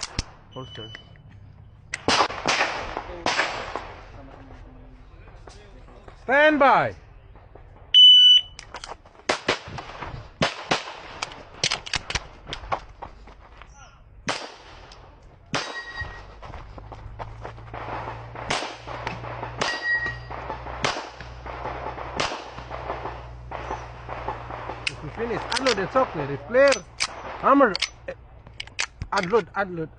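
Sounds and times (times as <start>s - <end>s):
pistol shots: 1.9s - 4.0s, 9.3s - 12.3s, 14.2s - 16.3s, 17.7s - 28.1s
shot timer beep: 8.0s - 8.6s
steel targets ringing: 15.6s - 16.4s, 19.2s - 20.7s.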